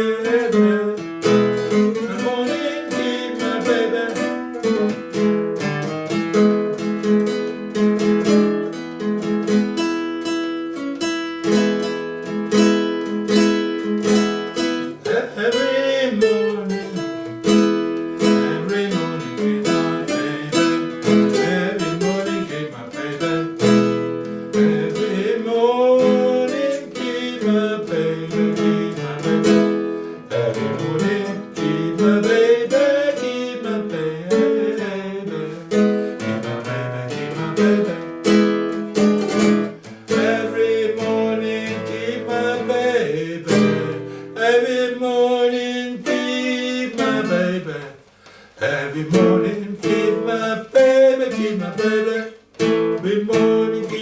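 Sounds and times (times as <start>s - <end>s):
person singing: 0.0s - 5.2s, 14.8s - 17.4s, 18.2s - 38.2s, 40.1s - 48.0s, 48.6s - 54.0s
acoustic guitar strumming: 0.0s - 54.0s.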